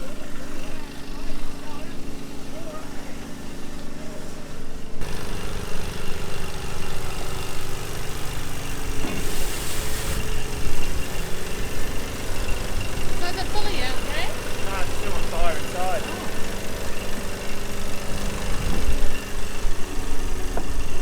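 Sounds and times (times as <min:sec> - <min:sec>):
diesel engine running: 0:00.0 - 0:21.0
hiss: 0:08.4 - 0:11.3.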